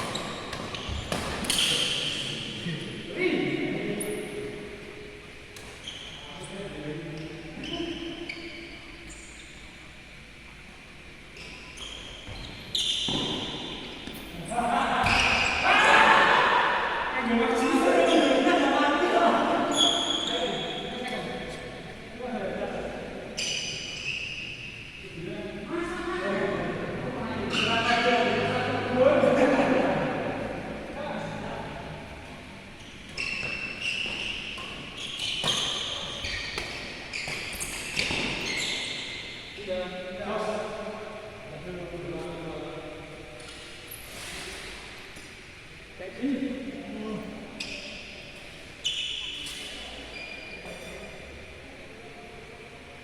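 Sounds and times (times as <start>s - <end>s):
shoes squeaking on court floor: 0.0s - 2.6s, 5.4s - 9.8s, 11.2s - 15.6s, 19.6s - 21.8s, 23.4s - 24.9s, 32.8s - 39.6s, 47.5s - 51.4s.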